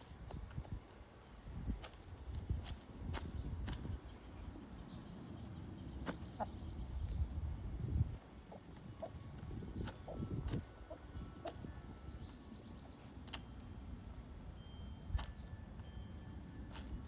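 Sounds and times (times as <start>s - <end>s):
hen clucking softly: 8.5s - 9.2s.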